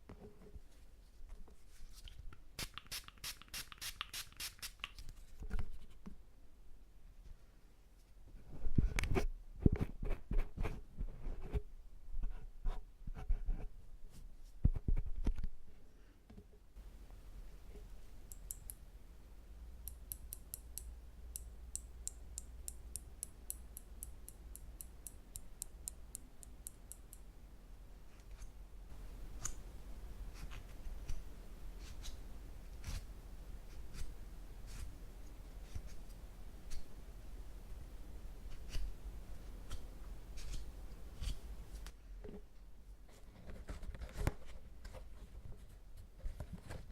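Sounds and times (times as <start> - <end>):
light sharp ticks: 19.8 - 27.3.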